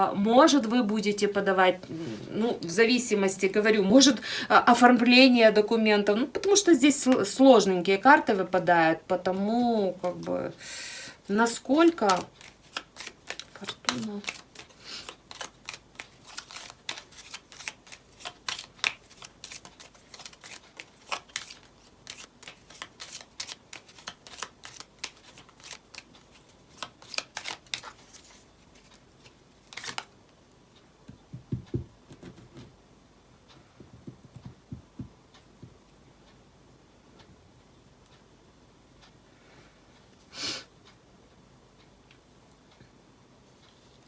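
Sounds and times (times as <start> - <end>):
cards shuffling flicks: 11.8 - 30.1, 31.3 - 32.7
soft low thumps: 31.1 - 32.7, 33.8 - 35.8.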